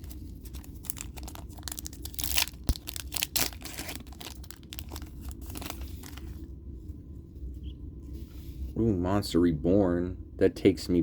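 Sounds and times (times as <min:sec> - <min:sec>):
foil wrapper tearing and crinkling: 0:00.0 - 0:06.3.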